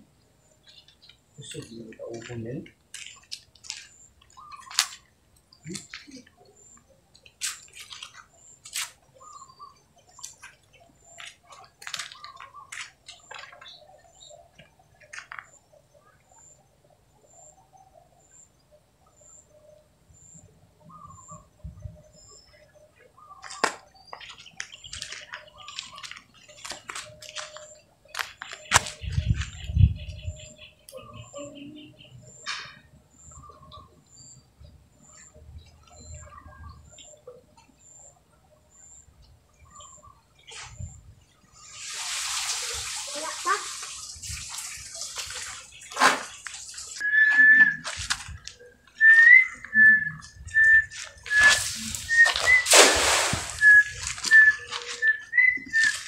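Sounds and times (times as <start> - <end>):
water splashing and sloshing: 41.5 - 47.0, 51.0 - 55.0
short high whistled notes: 49.0 - 56.0.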